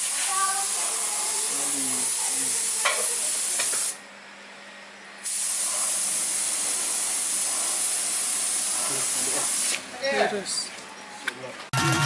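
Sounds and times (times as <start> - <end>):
paint spray gun hissing: 0.0 - 4.0, 5.2 - 9.8.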